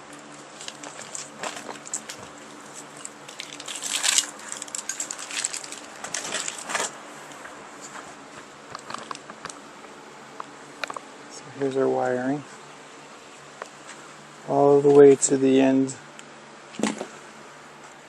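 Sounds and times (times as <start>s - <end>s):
wiring harness rustling and crinkling: 0.0s - 9.6s
faint steady hum: 0.0s - 18.0s.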